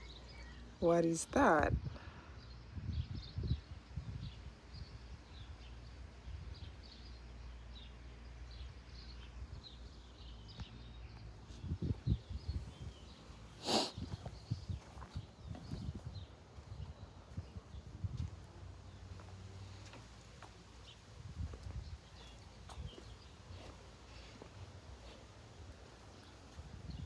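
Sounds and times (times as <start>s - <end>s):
small birds chirping: 0.0s - 27.0s.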